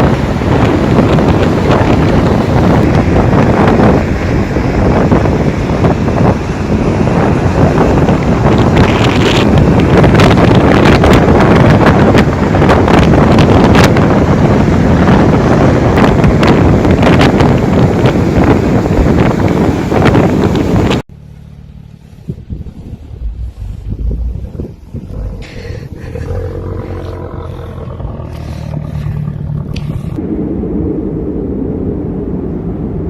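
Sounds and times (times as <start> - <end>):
wind buffeting microphone: 0.0 - 21.0, 22.0 - 33.0
low hum: 21.2 - 33.0.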